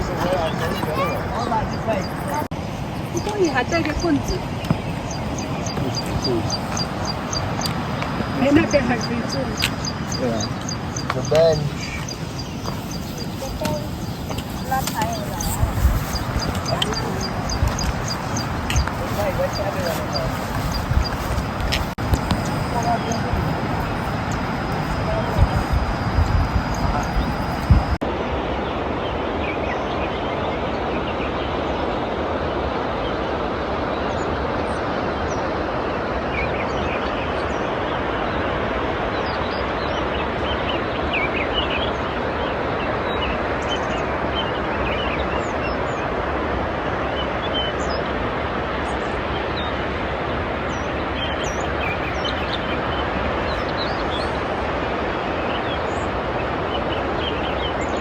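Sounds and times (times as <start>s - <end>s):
small birds chirping: 0.0s - 28.1s, 50.6s - 58.0s
steady rushing noise: 0.0s - 58.0s.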